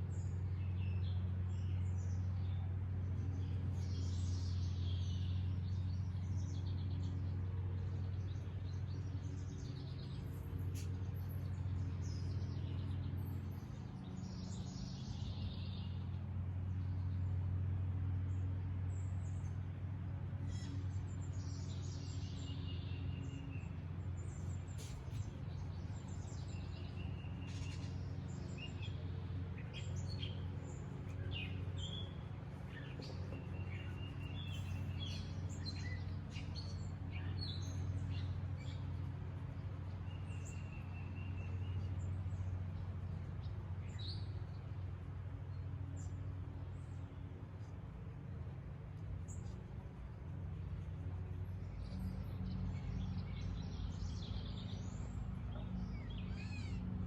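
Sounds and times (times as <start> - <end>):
steady low hum: 0.0 - 57.0
birds chirping and singing: 25.2 - 42.5, 51.6 - 57.0.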